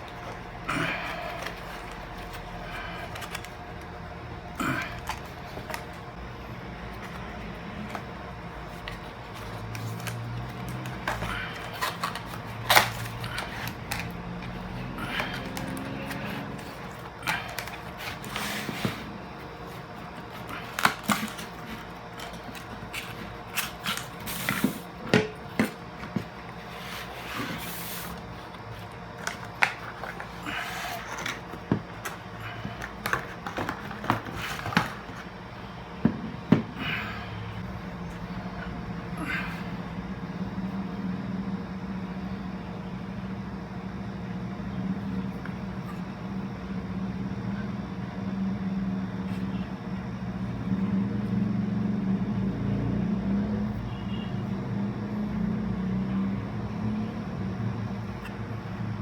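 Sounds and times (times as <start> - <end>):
low steady hum: 0.0 - 59.0
objects being handled: 6.8 - 35.4.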